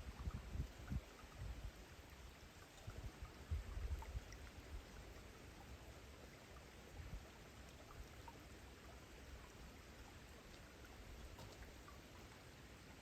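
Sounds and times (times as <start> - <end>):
faint raindrop patter: 0.0 - 13.0.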